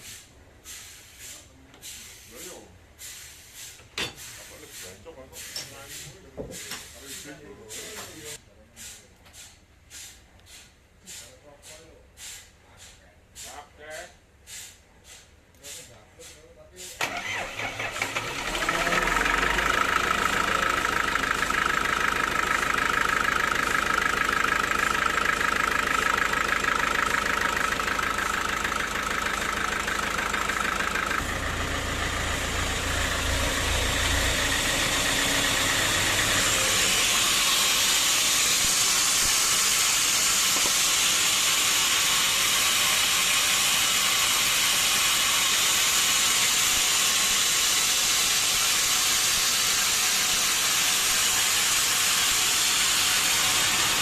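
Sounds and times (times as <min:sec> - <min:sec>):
sawmill saw cutting log: 0:16.9 - 0:54.0.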